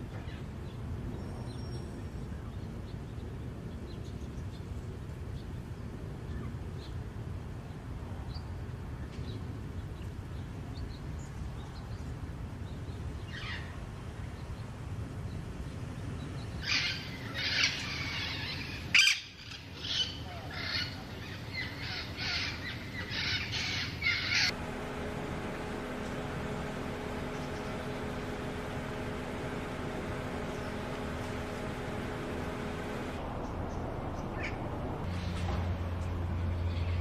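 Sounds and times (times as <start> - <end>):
low background rumble: 24.5 - 35.1.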